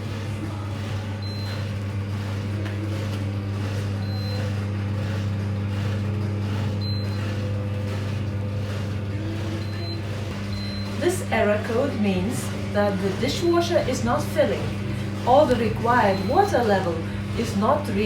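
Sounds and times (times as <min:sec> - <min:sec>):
dishwasher humming: 0:00.0 - 0:18.0.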